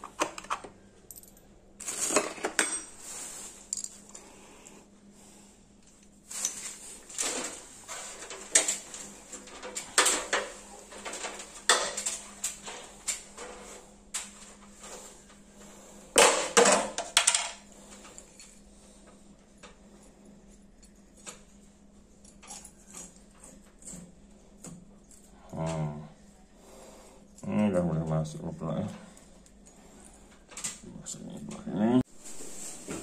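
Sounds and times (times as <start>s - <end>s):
metallic clinks and scrapes: 22.2s - 24.2s.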